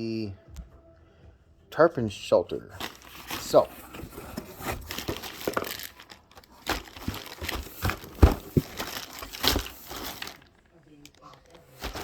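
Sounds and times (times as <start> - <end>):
plastic packaging crinkling: 2.8 - 12.0.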